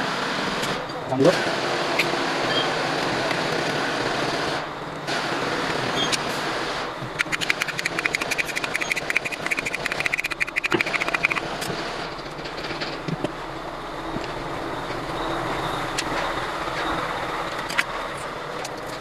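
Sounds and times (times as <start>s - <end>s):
steady background noise: 0.0s - 19.0s
metallic ratchet clicks: 7.2s - 11.4s.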